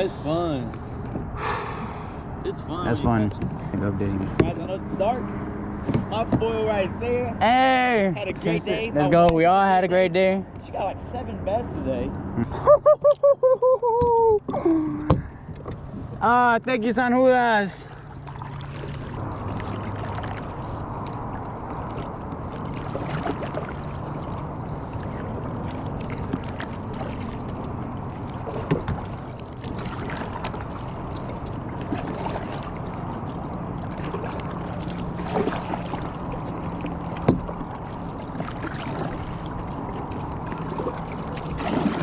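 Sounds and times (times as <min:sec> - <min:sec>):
water against kayak hull: 0:00.0 - 0:11.0, 0:11.6 - 0:42.0
knocks against boat: 0:04.2 - 0:05.1, 0:05.8 - 0:06.6, 0:15.0 - 0:16.0, 0:28.5 - 0:29.2, 0:37.2 - 0:37.6.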